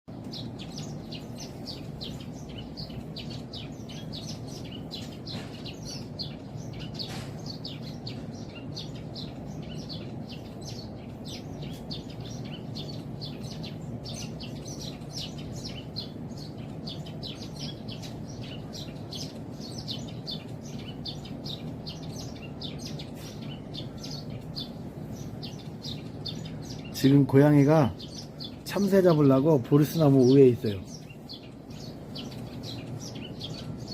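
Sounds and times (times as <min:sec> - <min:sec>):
low background rumble: 0:00.1 - 0:33.9
sparrows chirping: 0:00.1 - 0:33.9.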